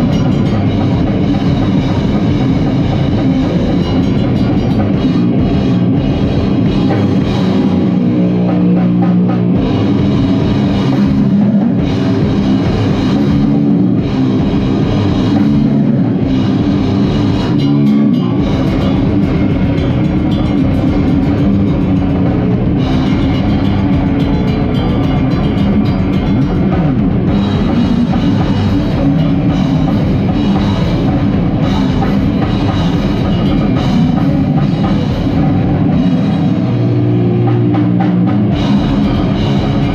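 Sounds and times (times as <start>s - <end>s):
distorted metal band playing: 0.0s - 39.9s.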